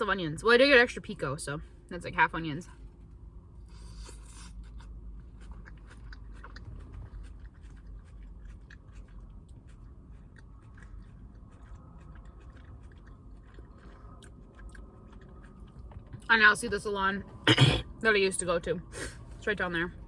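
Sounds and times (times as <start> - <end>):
low steady hum: 0.0 - 20.0
chewing crisp salad: 3.6 - 16.3.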